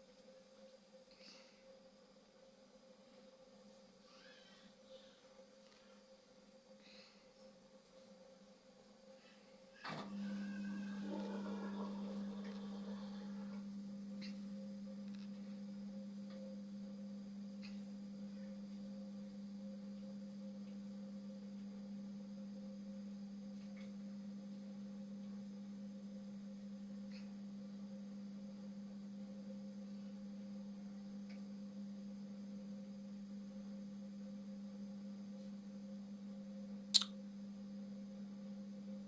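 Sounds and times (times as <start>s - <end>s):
washing machine pump humming: 6.8s - 36.9s.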